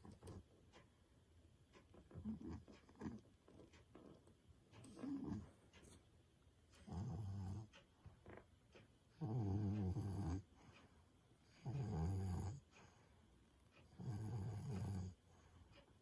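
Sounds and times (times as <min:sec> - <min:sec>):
cat snoring: 0:02.2 - 0:03.2, 0:04.8 - 0:05.5, 0:06.8 - 0:07.7, 0:09.2 - 0:10.4, 0:11.4 - 0:12.9, 0:13.9 - 0:15.2.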